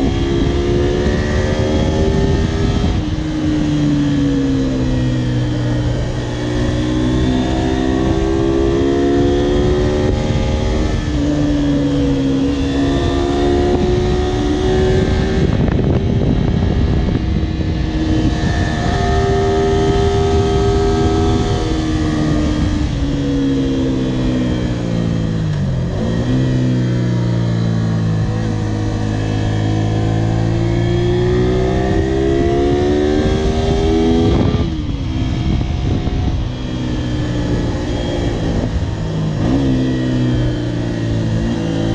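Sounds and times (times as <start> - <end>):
motorcycle engine revving: 0.0 - 41.9.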